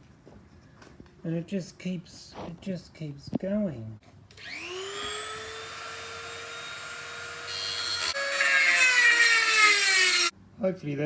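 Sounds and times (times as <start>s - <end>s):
rotary grinder whine: 4.3s - 10.3s
grinder grinding metal: 4.4s - 10.3s.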